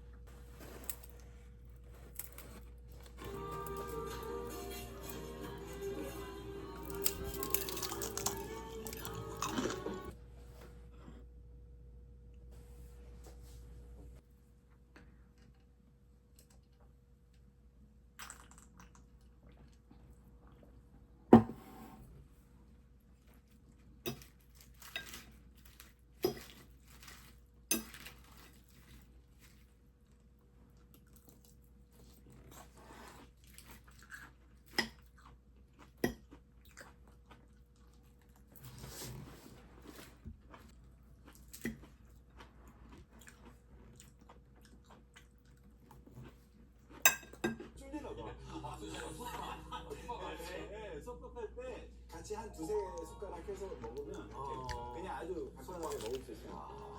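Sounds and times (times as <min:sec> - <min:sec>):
person chewing food: 0:00.3 - 0:10.2, 0:23.2 - 0:47.8, 0:53.6 - 0:56.9
dishes knocking: 0:21.3 - 0:21.8.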